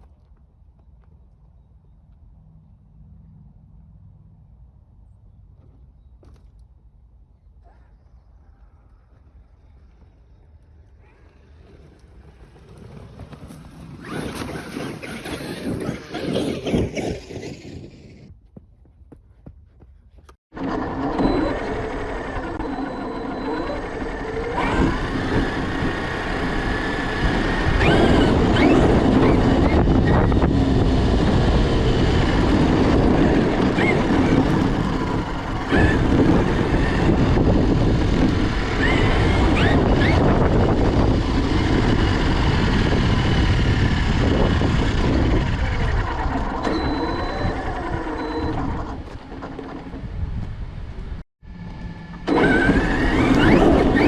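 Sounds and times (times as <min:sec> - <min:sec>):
electric motor whining: 0:13.6 - 0:18.0, 0:20.6 - 0:54.0.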